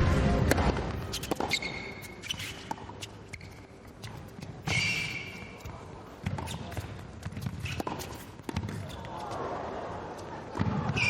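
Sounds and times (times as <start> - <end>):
tennis ball bouncing: 0.4 - 9.2
shoes squeaking on court: 0.8 - 9.5.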